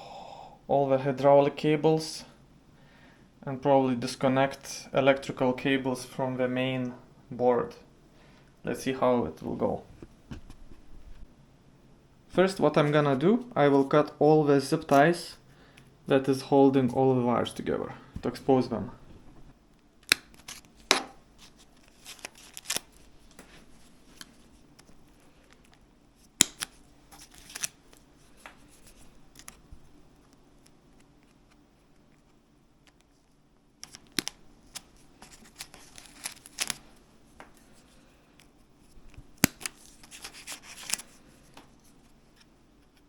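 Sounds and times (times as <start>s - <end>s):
rustling of wires and plastic: 20.2s - 43.0s.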